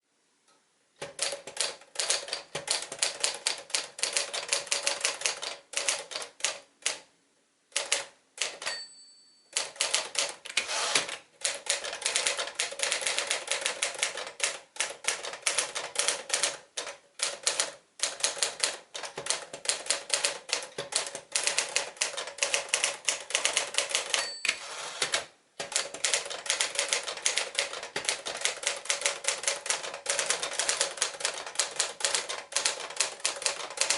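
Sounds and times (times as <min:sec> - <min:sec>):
typewriter keystrokes: 0:01.0 - 0:07.0, 0:07.8 - 0:08.8, 0:09.6 - 0:33.9
typewriter bell ringing: 0:08.6 - 0:09.9, 0:24.0 - 0:24.8.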